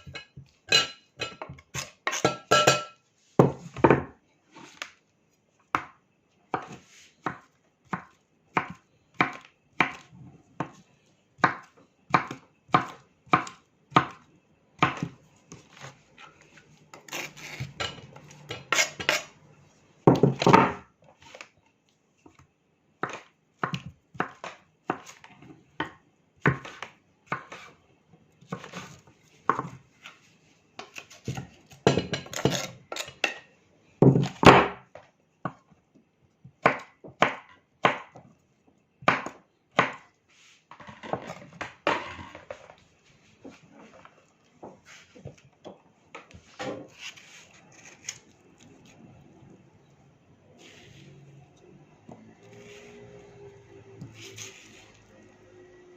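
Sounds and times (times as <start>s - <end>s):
knife chopping on cutting board: 5.8s - 10.8s, 11.4s - 14.2s, 14.8s - 16.0s
knife scraping board: 15.7s - 19.4s, 46.3s - 49.0s, 52.4s - 53.4s, 54.0s - 55.1s.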